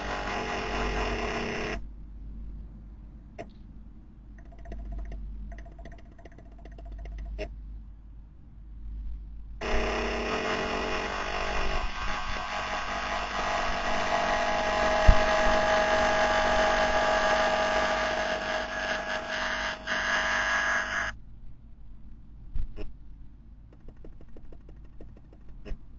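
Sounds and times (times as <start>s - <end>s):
mechanical whine and hum: 0.0s - 25.9s.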